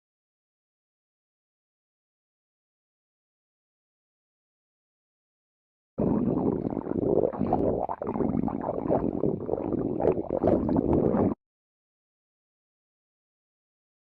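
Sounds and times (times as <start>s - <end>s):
stomach growling: 6.0s - 11.4s.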